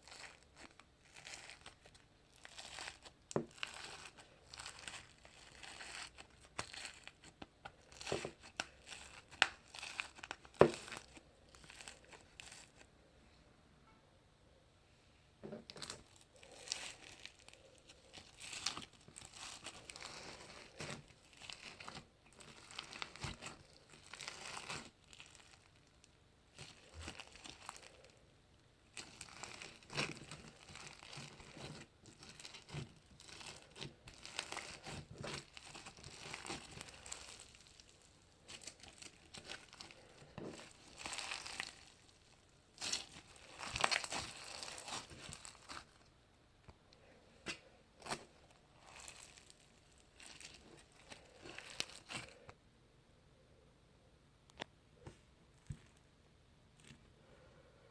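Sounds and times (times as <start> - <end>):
crunchy slime crackling: 0.0 - 12.9, 15.6 - 46.2, 47.4 - 52.6.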